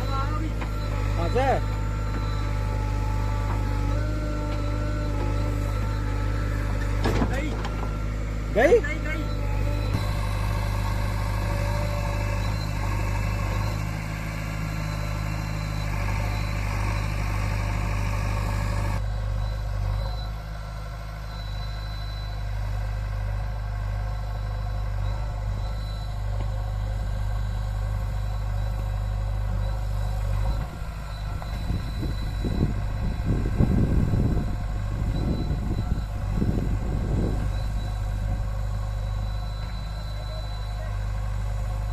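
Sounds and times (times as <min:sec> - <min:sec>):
heavy diesel engine running: 0:00.0 - 0:41.9
uneven rumbling knocks: 0:06.7 - 0:08.0.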